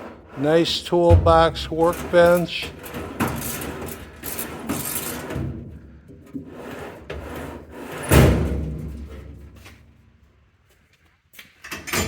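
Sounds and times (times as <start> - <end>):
steel drawers sliding on rollers: 0.0 - 9.3.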